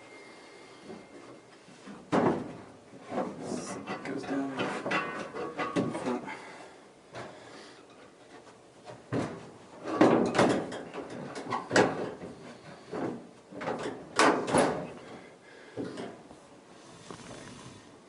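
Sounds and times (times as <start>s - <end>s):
metallic knocks and clunks: 2.1s - 6.2s, 8.9s - 12.3s.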